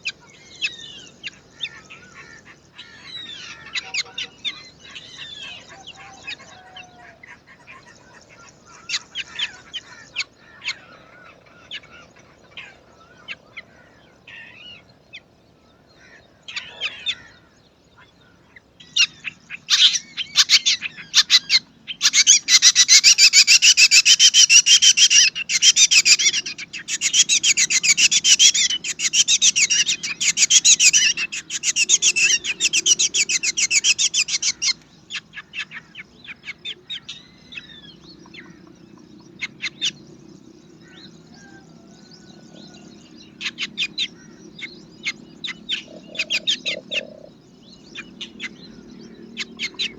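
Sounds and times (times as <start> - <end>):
nestlings begging chirps: 18.9 - 49.9.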